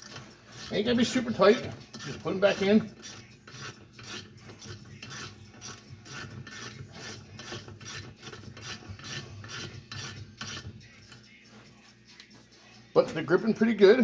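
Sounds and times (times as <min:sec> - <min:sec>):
ratchet clicking: 0:01.6 - 0:11.3.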